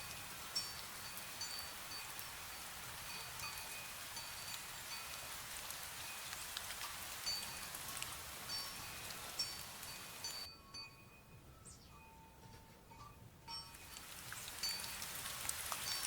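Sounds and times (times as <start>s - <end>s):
wind bell tinkling: 0.0s - 5.3s, 7.2s - 16.0s
raindrop ticks: 3.0s - 10.5s, 13.7s - 16.0s.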